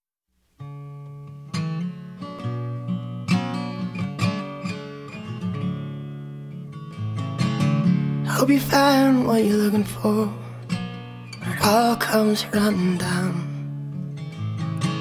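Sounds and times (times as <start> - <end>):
strummed acoustic guitar chords: 0.6 - 15.0.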